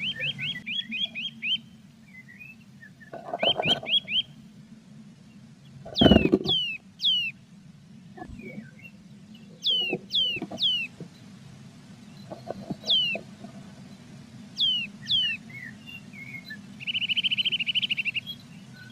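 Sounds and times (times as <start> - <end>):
bird calls sliding downward: 3.1 - 4.2, 5.9 - 7.3, 9.6 - 11.0, 12.3 - 13.7
fast bird trill: 3.1 - 4.3, 5.9 - 7.3, 9.6 - 11.0, 12.3 - 13.4
soft knocks and scratches: 5.9 - 6.6, 9.8 - 11.1, 12.3 - 13.6.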